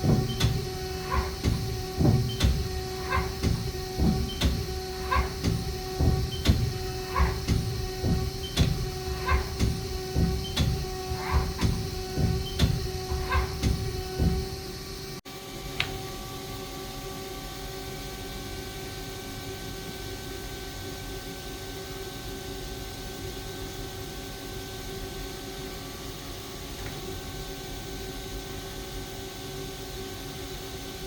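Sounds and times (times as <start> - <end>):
lathe rhythmic clunking: 0.0 - 14.8
steady machine hum: 0.0 - 31.0.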